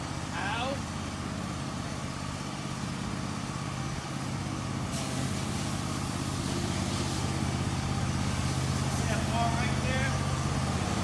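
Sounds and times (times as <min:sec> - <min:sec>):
engine idling: 0:00.0 - 0:11.0
hiss: 0:04.9 - 0:07.5.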